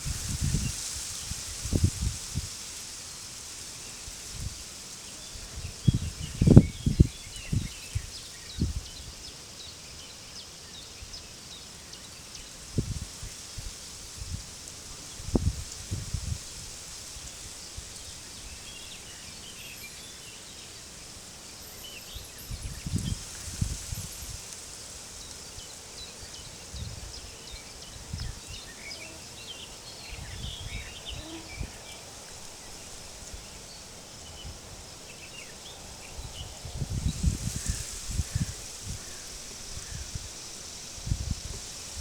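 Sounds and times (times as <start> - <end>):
wind gusts on microphone: 0.0 - 2.8, 4.0 - 9.2, 12.7 - 19.9, 22.1 - 25.0, 25.6 - 42.0
wind: 0.0 - 42.0
small birds chirping: 17.2 - 42.0.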